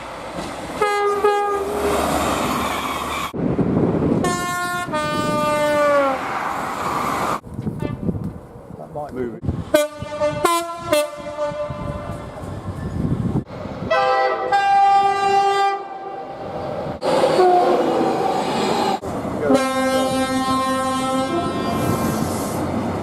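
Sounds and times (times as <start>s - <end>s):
train rumble: 0.0s - 15.5s, 16.2s - 23.0s
train horn blasts: 0.8s - 1.7s, 4.2s - 6.2s, 9.7s - 12.2s, 13.9s - 16.1s, 17.3s - 17.8s, 19.5s - 22.0s.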